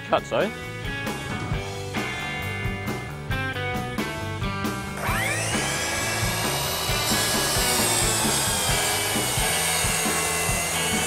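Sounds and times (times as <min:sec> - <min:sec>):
background music with steady beat: 0:00.0 - 0:11.0
miter saw cutting wood: 0:04.6 - 0:11.0.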